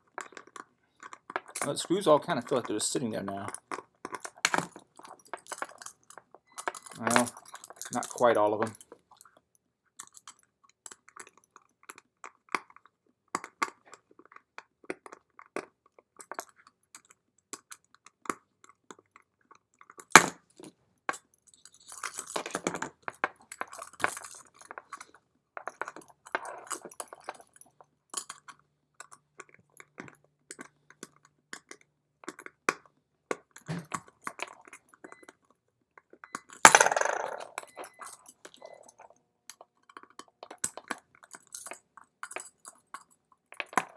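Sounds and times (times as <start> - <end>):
scratchy rattling handling: 36.6 - 37.8.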